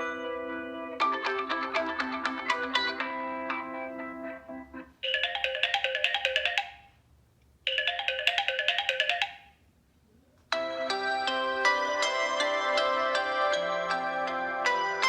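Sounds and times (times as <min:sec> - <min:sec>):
phone ringtone bright notes: 0:00.0 - 0:02.4, 0:05.0 - 0:07.0, 0:07.7 - 0:09.6, 0:10.6 - 0:15.0
phone ringtone melody: 0:00.0 - 0:04.0, 0:05.0 - 0:07.0, 0:07.7 - 0:09.6, 0:10.6 - 0:15.0.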